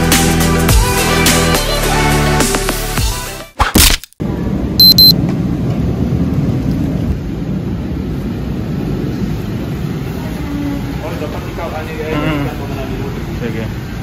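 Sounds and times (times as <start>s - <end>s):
steady low rumble: 4.2s - 11.4s
short high electronic beeps: 4.8s - 5.1s.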